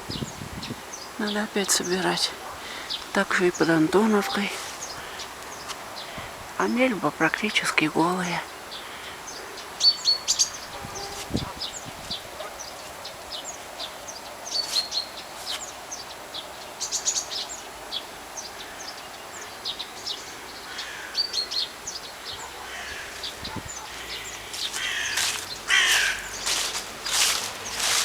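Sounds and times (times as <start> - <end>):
small birds chirping: 0.0 - 28.0
harsh calls of bigger bird: 24.8 - 26.4.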